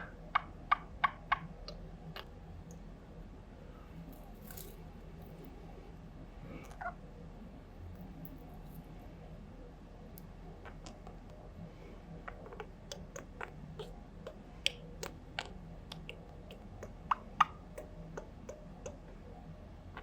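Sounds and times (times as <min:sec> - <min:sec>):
budgerigar popping and clicking: 0:00.0 - 0:02.8, 0:10.6 - 0:11.4, 0:12.2 - 0:19.3.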